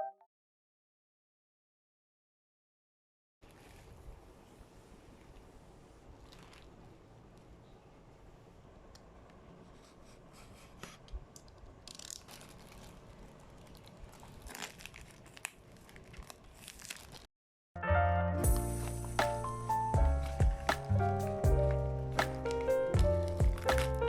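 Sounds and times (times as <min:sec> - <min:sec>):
music: 0:00.0 - 0:00.2, 0:17.8 - 0:24.0
packaging crinkling and tearing: 0:06.2 - 0:06.8, 0:11.4 - 0:17.3, 0:18.7 - 0:24.0.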